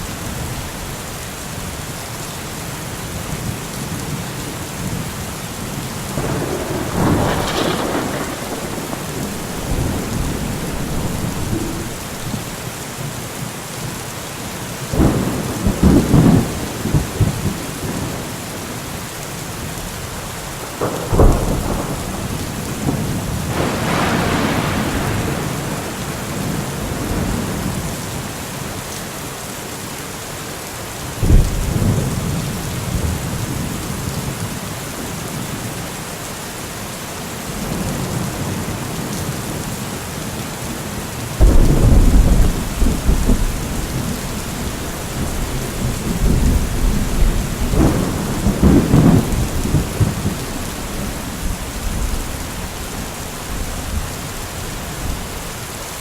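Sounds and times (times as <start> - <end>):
heavy rain: 0.0 - 56.0
thunder claps and rumbles: 3.2 - 13.2, 14.9 - 18.6, 20.6 - 28.3, 31.2 - 34.5, 37.5 - 55.6.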